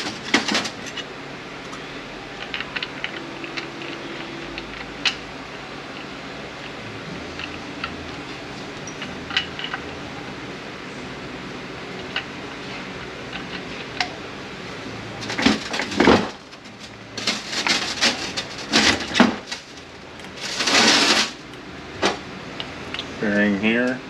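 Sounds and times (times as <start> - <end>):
metal parts clanking and scraping: 0.0 - 5.2, 7.3 - 10.0, 15.2 - 21.4.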